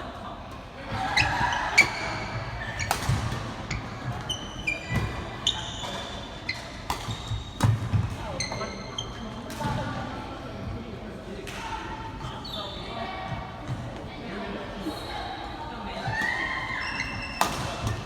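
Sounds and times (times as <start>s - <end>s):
sports shoes squeaking on court: 1.2s - 9.3s.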